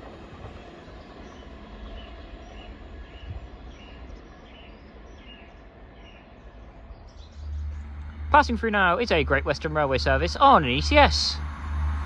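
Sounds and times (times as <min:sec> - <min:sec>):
train rumbling: 0:00.0 - 0:12.0.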